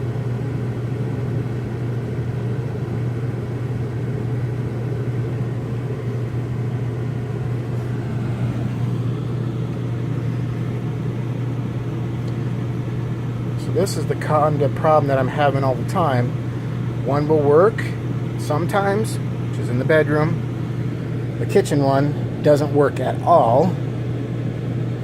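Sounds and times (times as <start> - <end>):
air conditioner humming: 0.0 - 25.0.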